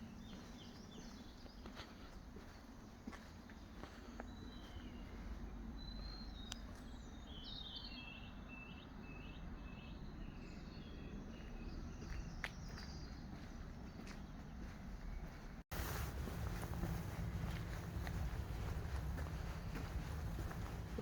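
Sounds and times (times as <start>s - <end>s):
small bird chirping: 0.0s - 15.4s
low outdoor rumble: 14.4s - 21.0s.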